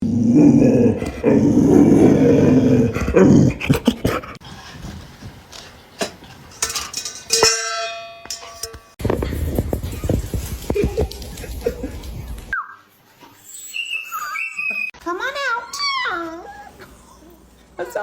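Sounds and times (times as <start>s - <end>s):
dog growling: 0.0s - 4.4s.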